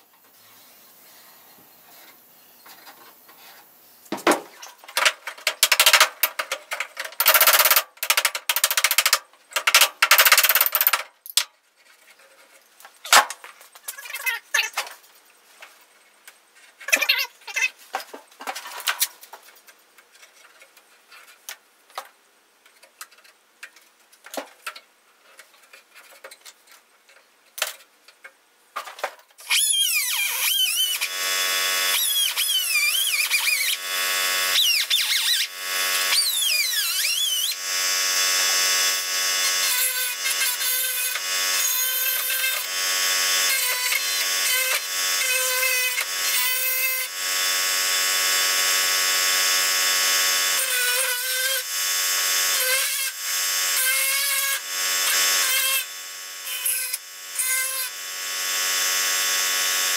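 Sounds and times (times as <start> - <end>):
power cutting tool whining: 29.4 - 59.9.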